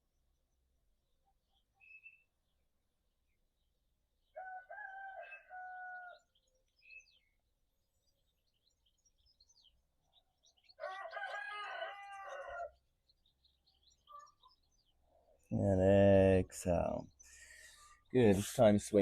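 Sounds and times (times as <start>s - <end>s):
small birds chirping faintly: 0.0s - 19.0s
rooster crowing: 4.4s - 6.3s, 10.8s - 12.8s.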